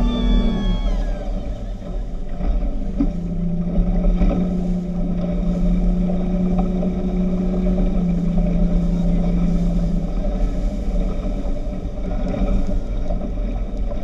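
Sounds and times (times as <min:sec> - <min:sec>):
speedboat engine running: 0:00.0 - 0:14.0.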